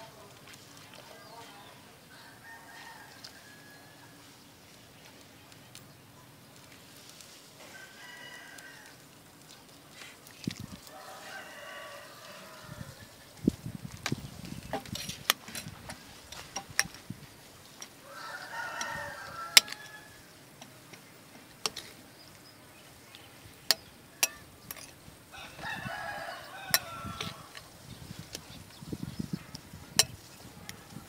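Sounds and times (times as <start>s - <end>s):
rooster crowing: 2.1s - 4.2s, 7.6s - 9.0s, 10.9s - 13.2s, 18.0s - 20.3s, 25.3s - 27.6s.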